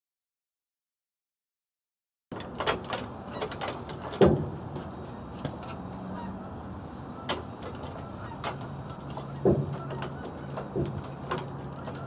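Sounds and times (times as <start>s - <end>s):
metal knocks and clunks: 2.3s - 5.8s, 7.3s - 12.0s.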